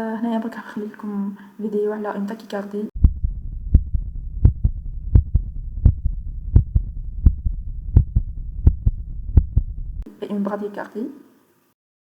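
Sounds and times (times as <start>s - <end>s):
heartbeat through stethoscope: 3.0s - 10.1s
low rumble: 3.0s - 10.1s.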